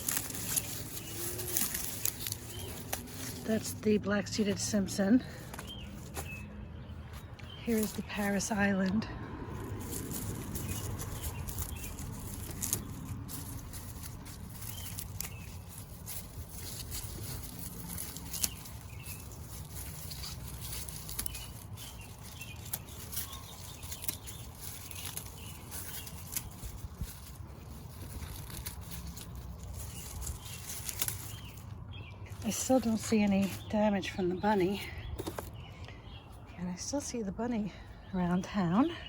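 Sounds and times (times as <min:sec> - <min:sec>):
lettuce leaves snapping: 0:00.0 - 0:03.8, 0:09.6 - 0:33.7
steady low rumble: 0:00.0 - 0:39.0.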